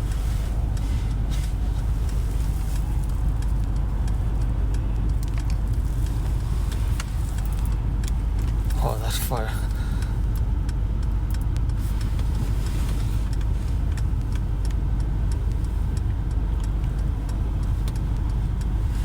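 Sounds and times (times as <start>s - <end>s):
faint ticks: 0.0s - 19.0s
road rumble inside car: 0.0s - 19.0s.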